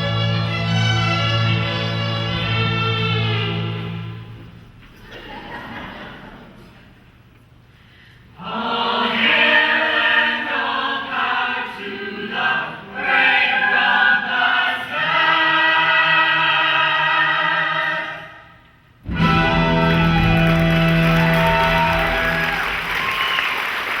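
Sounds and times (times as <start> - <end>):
chorus singing in harmony: 8.4 - 18.5.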